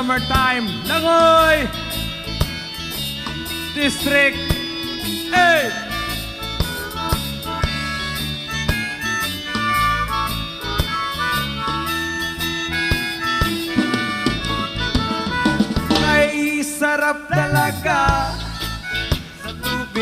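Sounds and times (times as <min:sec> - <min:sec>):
instrumental pop music: 0:00.0 - 0:20.0.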